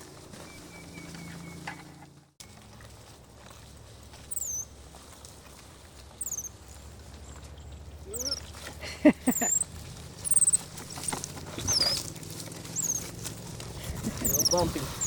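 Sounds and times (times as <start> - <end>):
small animal high chirps: 4.2 - 4.7, 6.2 - 6.6, 8.1 - 8.6, 9.3 - 12.1, 12.7 - 13.1, 14.2 - 14.7.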